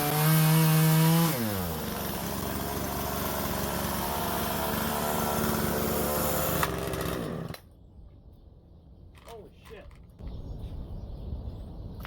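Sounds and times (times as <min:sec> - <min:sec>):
chainsaw revving down and idling: 0:00.0 - 0:07.6.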